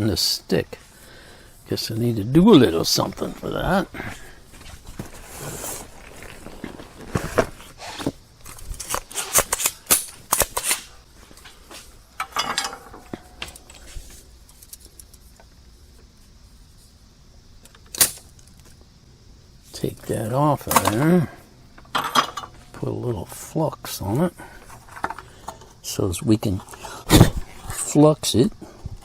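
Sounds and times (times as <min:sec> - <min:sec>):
small tools clicking and clattering: 0:08.0 - 0:15.5, 0:21.8 - 0:22.6, 0:24.6 - 0:25.8.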